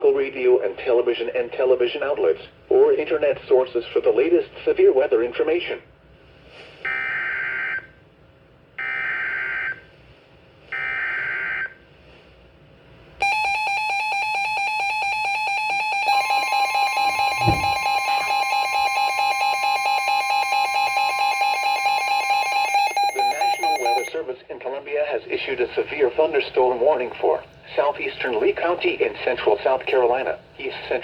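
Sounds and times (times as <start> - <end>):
steady electronic alert tone: 15.6 - 19.1
low thump: 17.3 - 17.9.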